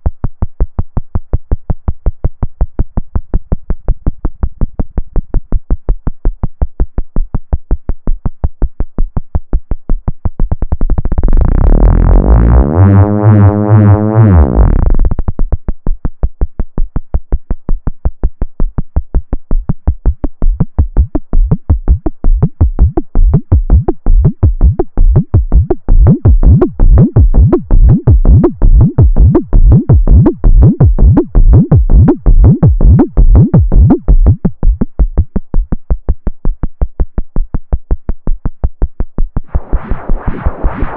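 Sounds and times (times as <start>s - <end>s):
synthesizer playing short notes: 11.7s - 14.9s.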